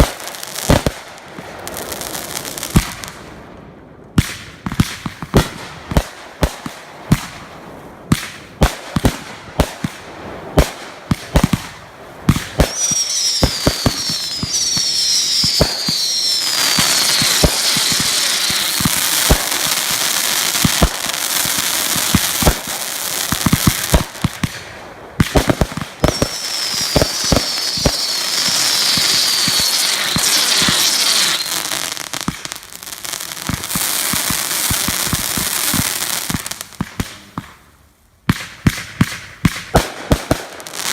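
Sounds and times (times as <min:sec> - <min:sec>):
fireworks bangs: 0:00.0 - 0:03.4, 0:04.1 - 0:37.7, 0:38.3 - 0:40.9
fireworks crackling: 0:00.0 - 0:40.9
falling firework whistles: 0:12.4 - 0:19.7, 0:25.4 - 0:32.6.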